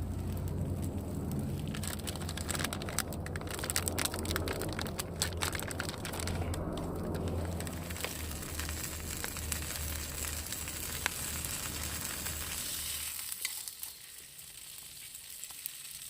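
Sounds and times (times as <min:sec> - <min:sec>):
campfire crackling and popping: 0:00.0 - 0:16.0
low steady fire rumble: 0:00.0 - 0:16.0.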